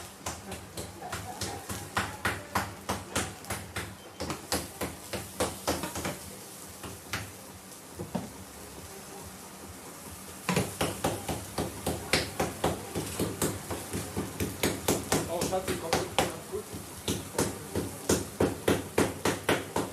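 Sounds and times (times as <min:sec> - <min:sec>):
rapid rhythmic knocking: 0:10.5 - 0:19.9.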